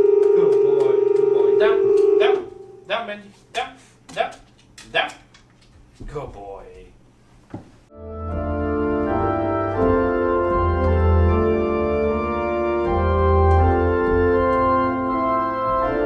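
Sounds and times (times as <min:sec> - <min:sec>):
electronic organ chords: 0:00.0 - 0:03.3, 0:07.9 - 0:16.0
deep bass notes: 0:07.9 - 0:16.0.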